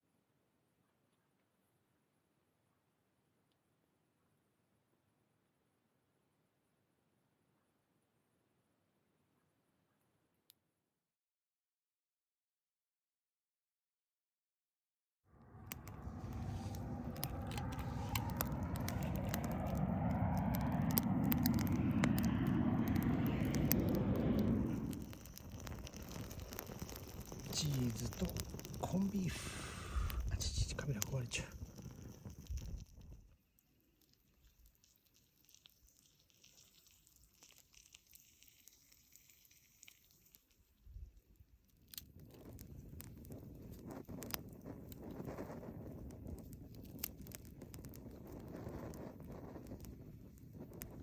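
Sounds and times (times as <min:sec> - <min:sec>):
low rushing noise: 0:15.3 - 0:26.4
campfire crackling and popping: 0:15.4 - 0:51.0.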